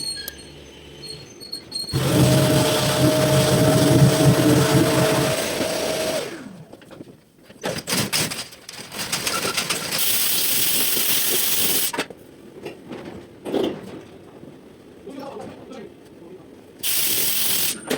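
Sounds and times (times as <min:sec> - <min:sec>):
power sander running: 0:01.9 - 0:06.8.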